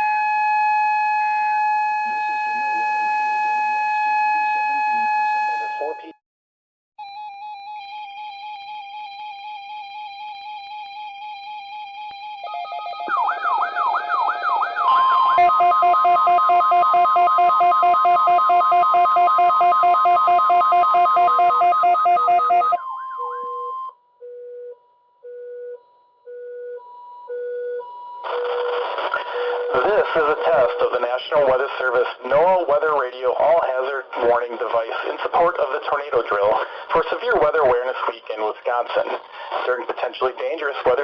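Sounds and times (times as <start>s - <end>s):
high warning alarm tone: 0.0s - 6.1s, 7.0s - 31.9s
rising siren-like tones: 11.5s - 23.9s
rapid electronic beeping: 13.1s - 23.7s, 29.2s - 31.6s
warbling alert tone: 21.2s - 23.9s.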